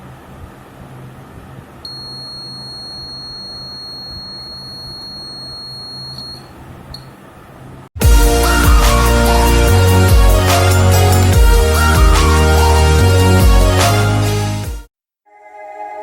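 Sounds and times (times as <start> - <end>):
high-pitched alarm buzzer tone: 1.9 - 6.5.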